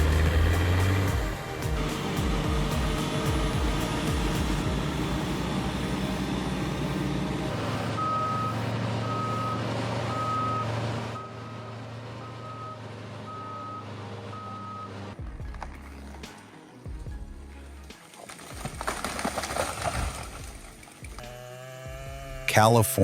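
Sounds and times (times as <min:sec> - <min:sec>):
heavy vehicle engine running: 0:00.0 - 0:16.3
back-up alarm beeping: 0:01.1 - 0:15.0.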